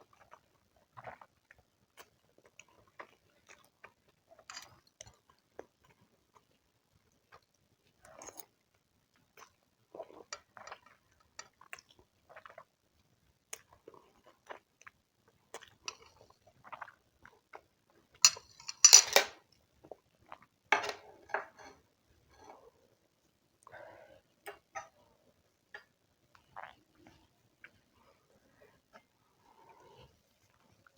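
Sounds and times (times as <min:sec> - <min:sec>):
utensil clattering against dish: 0:18.3 - 0:19.4.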